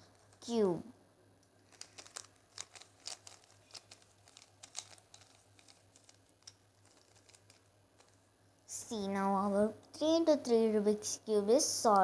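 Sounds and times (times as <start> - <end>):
puzzle cube plastic clicks: 1.7 - 8.2.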